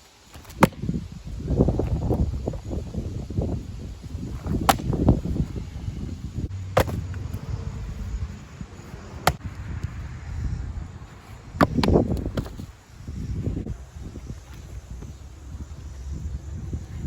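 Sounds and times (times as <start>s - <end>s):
wind noise: 0.0s - 17.0s
sharp wooden knocks: 6.8s - 7.0s.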